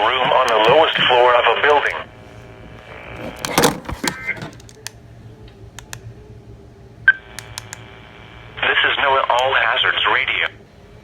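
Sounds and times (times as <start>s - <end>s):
radio receiver hum and hiss: 0.0s - 11.0s.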